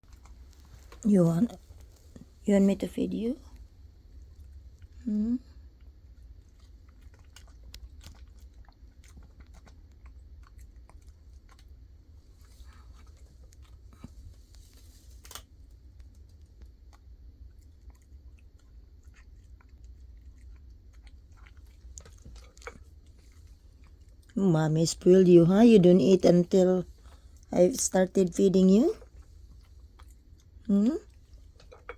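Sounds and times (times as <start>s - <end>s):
pet chewing and crunching: 0.0s - 31.9s.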